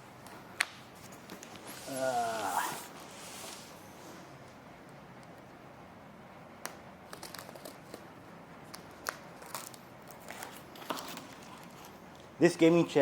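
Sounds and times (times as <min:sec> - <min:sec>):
faint room hiss: 0:00.0 - 0:13.0
small crinkles: 0:07.1 - 0:12.3.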